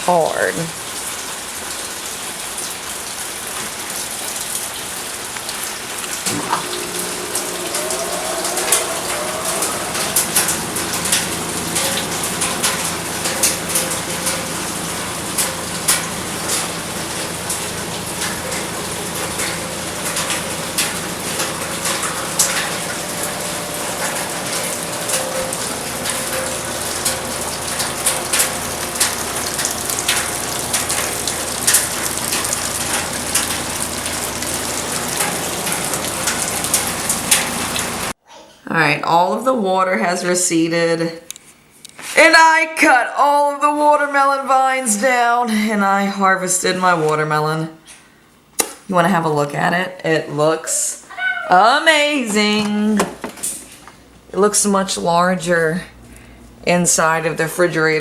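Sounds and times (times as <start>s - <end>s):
sharp drips and splats: 0.0s - 38.2s
steady rain: 0.0s - 38.2s
mechanical hum with whine: 6.1s - 38.2s.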